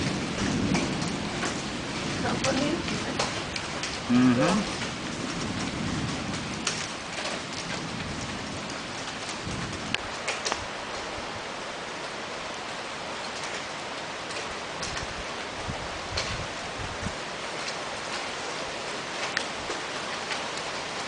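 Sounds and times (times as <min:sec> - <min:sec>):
hail impacts ticking: 0:00.0 - 0:10.6
heavy rain hissing: 0:00.0 - 0:21.0.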